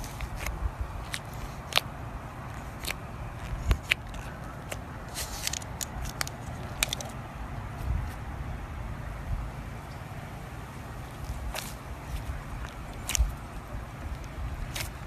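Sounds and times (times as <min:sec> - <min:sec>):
slime clicking and crackling: 0:00.0 - 0:07.2, 0:11.0 - 0:15.0.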